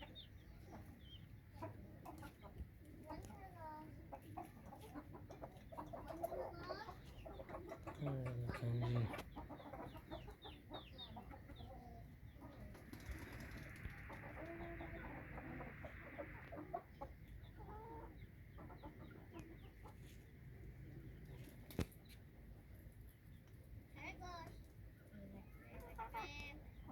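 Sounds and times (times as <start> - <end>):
hens clucking: 0.0 - 21.4
chicks peeping: 0.0 - 22.2.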